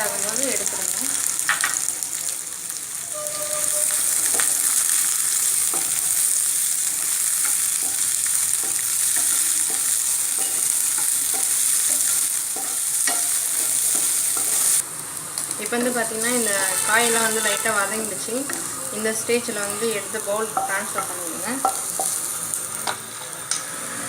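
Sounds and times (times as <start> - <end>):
vegetables sizzling in hot oil: 0.0 - 24.0
utensil tapping and scraping pan: 6.9 - 14.7.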